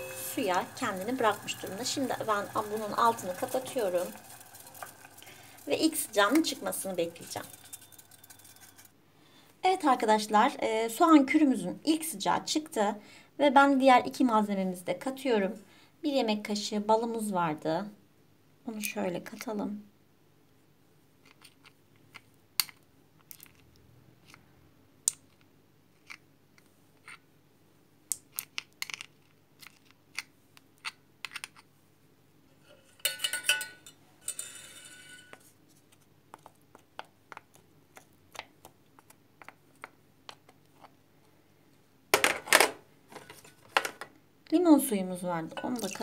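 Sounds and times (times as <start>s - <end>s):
metal spoon clinking on kitchenware: 0.0s - 8.9s, 32.7s - 35.5s, 45.5s - 46.0s
scraping clatter: 0.7s - 9.0s.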